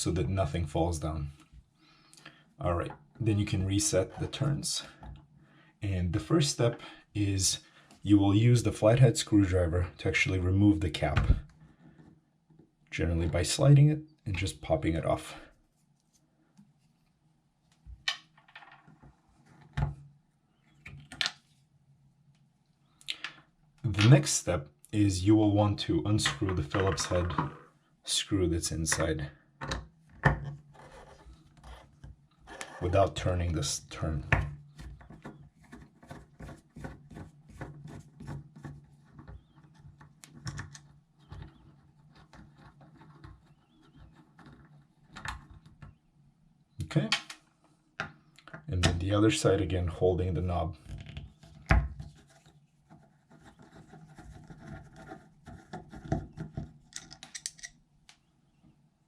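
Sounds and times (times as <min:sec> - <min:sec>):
sharp plastic and metal clicks: 0:56.9 - 0:58.2.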